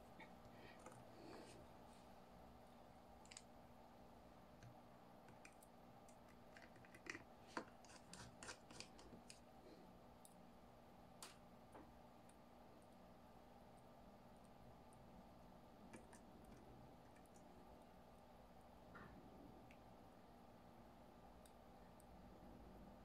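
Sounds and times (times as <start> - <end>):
low background hum: 0.0 - 23.0
faint small clicks and scrapes: 0.2 - 1.7, 3.2 - 3.5, 4.6 - 9.5, 15.8 - 17.9.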